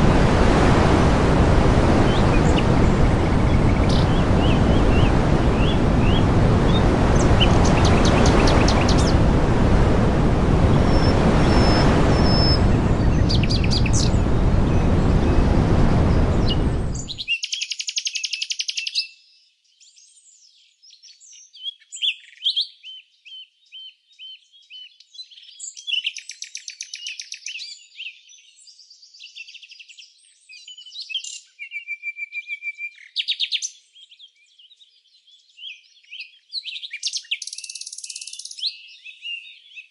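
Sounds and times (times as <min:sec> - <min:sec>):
loud steady rush of noise: 0:00.0 - 0:17.2
small birds chirping: 0:02.0 - 0:09.3, 0:10.7 - 0:39.9.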